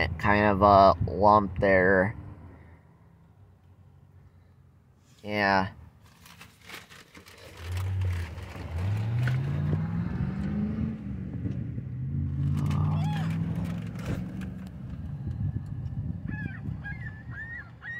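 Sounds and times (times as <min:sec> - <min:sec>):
car engine accelerating: 0:07.2 - 0:17.8.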